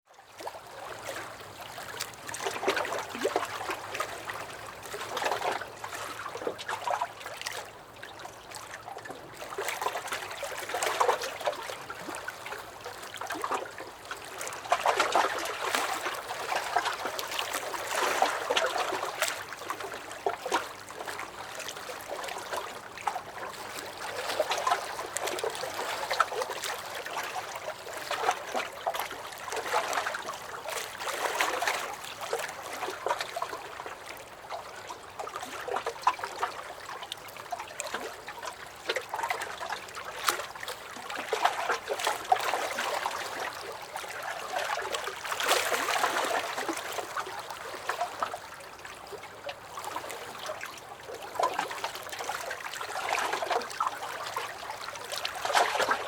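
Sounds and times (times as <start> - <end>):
waves lapping against a dock: 0.2 - 56.0.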